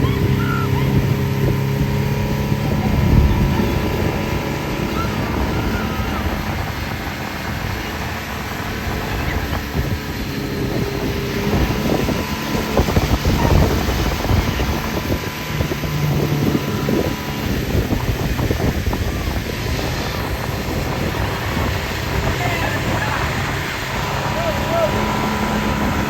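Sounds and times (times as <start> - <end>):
motorboat running at speed: 0.0 - 26.0
wind buffeting microphone: 0.0 - 26.0.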